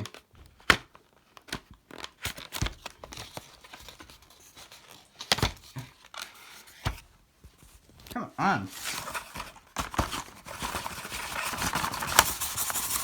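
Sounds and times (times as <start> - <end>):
plastic packaging rustling: 0.0 - 6.9, 8.7 - 13.0.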